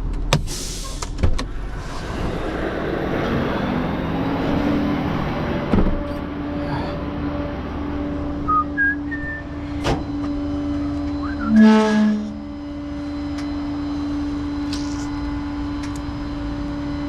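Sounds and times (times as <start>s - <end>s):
vehicle engine idling: 1.0s - 17.0s
loud buzzing tone: 5.0s - 17.0s.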